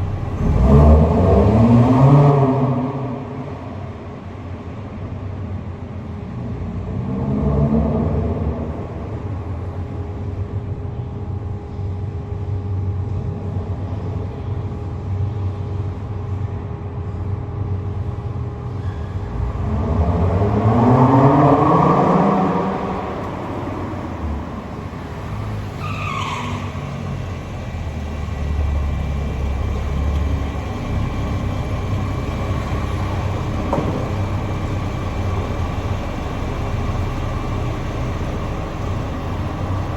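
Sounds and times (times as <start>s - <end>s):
sports car engine idling and revving: 0.0s - 39.9s
brief high squeal: 18.7s - 19.4s.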